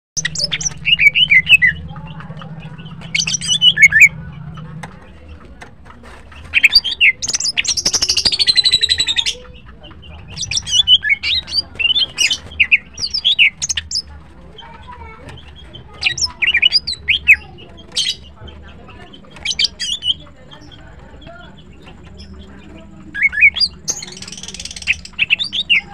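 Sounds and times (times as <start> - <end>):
bird chirping and whistling: 0.2 - 1.9, 2.8 - 4.2, 6.5 - 9.4, 10.3 - 14.1.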